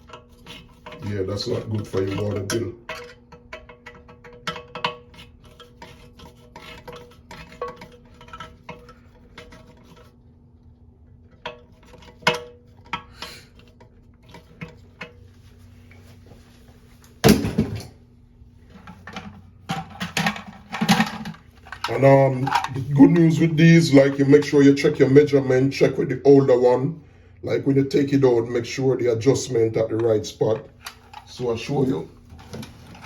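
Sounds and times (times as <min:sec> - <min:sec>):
tools tapping porcelain tank: 0:00.0 - 0:10.1, 0:11.3 - 0:15.2
loud clunk: 0:17.2 - 0:17.9.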